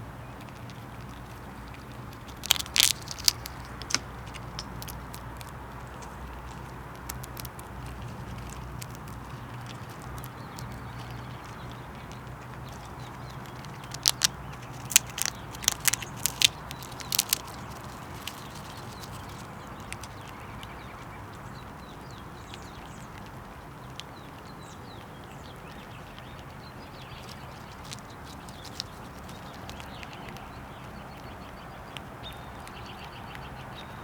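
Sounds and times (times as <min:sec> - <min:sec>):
squirrel tapping and knocking: 0:00.3 - 0:20.9, 0:27.1 - 0:30.4.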